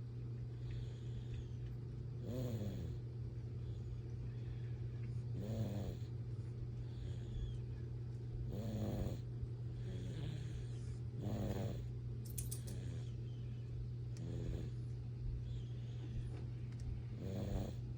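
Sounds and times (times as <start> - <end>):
steady low hum: 0.0 - 17.9
pet snoring: 2.2 - 3.1, 5.3 - 6.1, 8.5 - 12.0, 14.2 - 14.8, 17.1 - 17.9.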